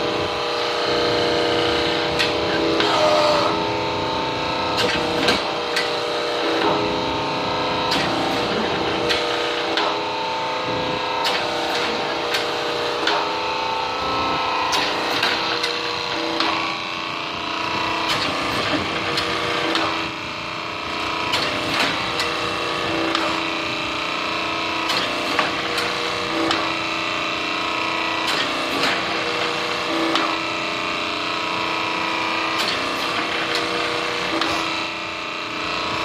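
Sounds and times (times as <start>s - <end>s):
electric motor and pump humming: 0.0s - 36.0s.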